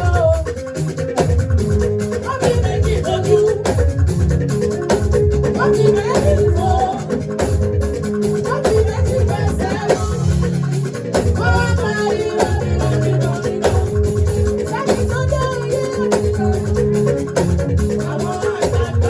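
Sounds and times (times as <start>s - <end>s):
rattle percussion: 0.0s - 19.0s
upbeat praise music: 0.0s - 19.0s
person singing: 2.3s - 3.8s, 5.6s - 7.2s, 8.5s - 17.0s, 17.8s - 19.0s.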